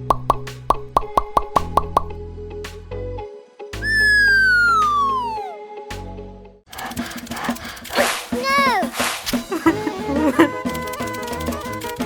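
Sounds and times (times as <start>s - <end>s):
short plopping sound effects: 0.0s - 2.2s
background music with bass notes: 0.0s - 3.3s.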